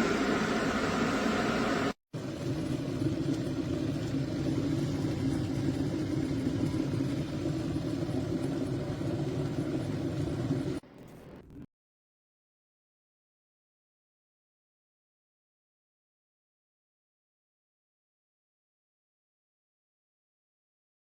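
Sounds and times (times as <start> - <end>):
electric kettle heating water: 0.0 - 10.8.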